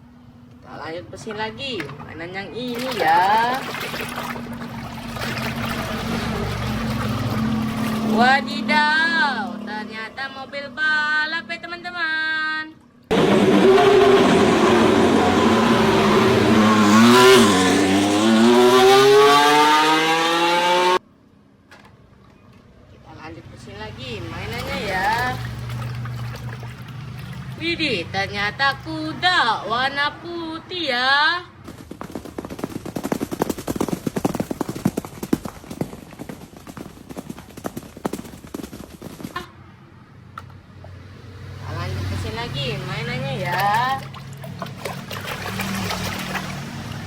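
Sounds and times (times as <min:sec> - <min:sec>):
race car engine accelerating: 0:13.1 - 0:21.0
horse hooves galloping: 0:31.5 - 0:39.7.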